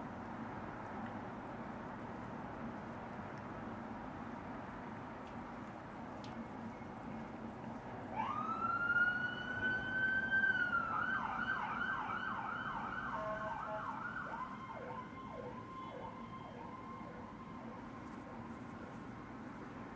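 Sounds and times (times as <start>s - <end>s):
lower yelping siren tone: 8.2s - 18.0s
emergency siren wailing and yelping: 8.2s - 18.5s.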